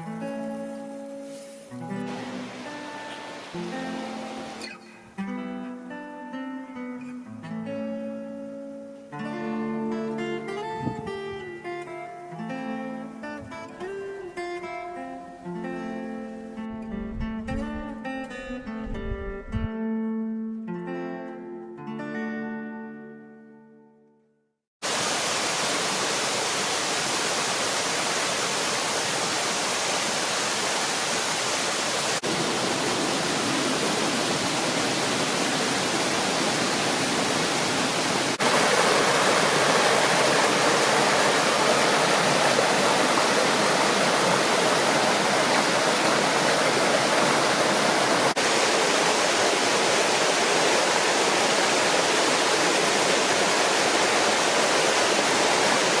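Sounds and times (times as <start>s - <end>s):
waterfall rushing: 1.7s - 4.8s, 24.8s - 56.0s.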